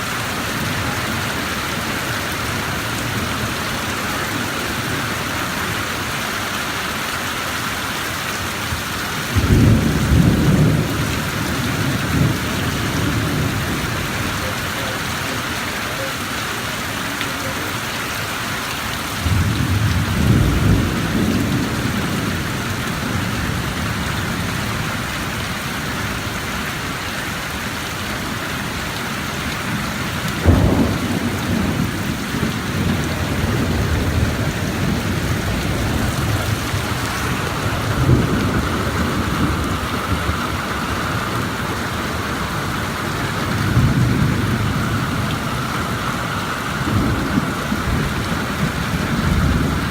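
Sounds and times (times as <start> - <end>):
heavy rain falling: 0.0 - 49.9
thunder rumbling: 9.1 - 16.4, 19.2 - 25.3, 29.5 - 49.9
sharp thunder crack: 30.4 - 40.3.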